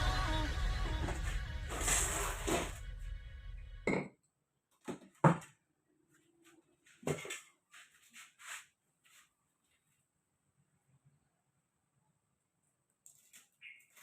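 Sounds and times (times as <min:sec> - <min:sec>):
music: 0:00.0 - 0:03.8.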